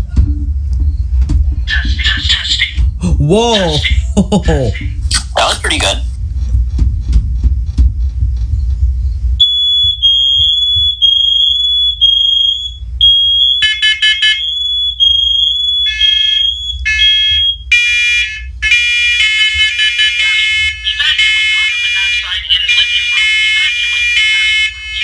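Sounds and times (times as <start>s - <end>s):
buzzy alarm tones: 9.4s - 25.0s
high alarm beeping: 9.4s - 25.0s.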